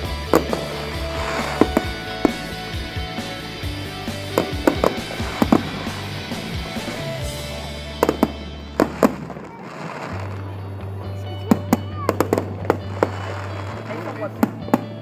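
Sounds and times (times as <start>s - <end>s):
fireworks bangs: 0.0s - 3.4s, 4.1s - 10.5s
music with low bass: 0.0s - 15.0s.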